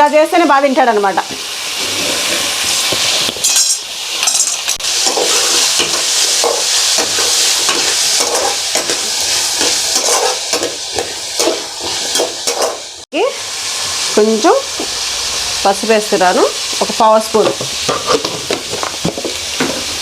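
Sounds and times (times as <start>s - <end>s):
food sizzling in hot oil: 0.0s - 20.0s
spatula scraping pan: 1.8s - 3.3s, 4.8s - 13.0s, 17.4s - 20.0s.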